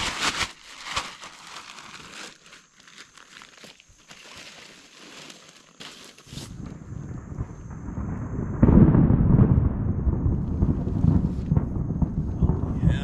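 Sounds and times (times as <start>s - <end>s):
plastic gear crinkling and rustling: 0.0s - 6.4s
low rumble: 6.7s - 13.0s.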